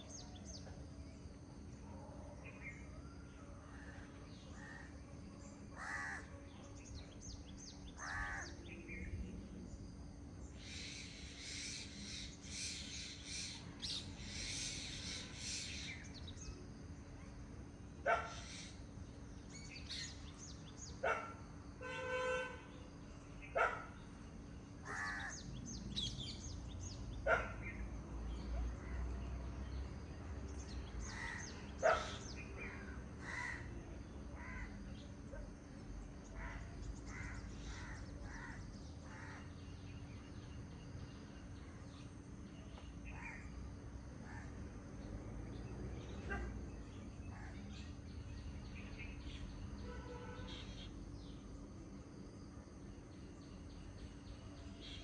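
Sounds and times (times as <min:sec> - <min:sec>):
birds twittering: 0:00.0 - 0:17.4, 0:18.0 - 0:51.5
loud short bird calls: 0:05.8 - 0:06.4, 0:07.9 - 0:08.7, 0:24.8 - 0:27.8, 0:31.0 - 0:33.8, 0:36.3 - 0:39.6, 0:49.3 - 0:51.0
rasping drawn-out bird call: 0:24.8 - 0:25.5.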